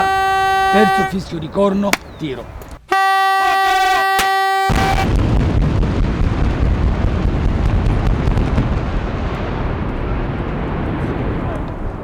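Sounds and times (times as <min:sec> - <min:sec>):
warning horn blast: 0:00.0 - 0:01.2, 0:02.9 - 0:05.2
explosive charges detonating: 0:04.7 - 0:12.0.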